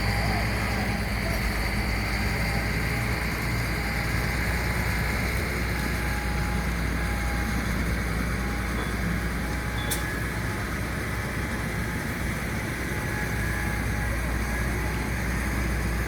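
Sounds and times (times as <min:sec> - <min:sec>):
drilling rig machinery drone: 0:00.0 - 0:16.0.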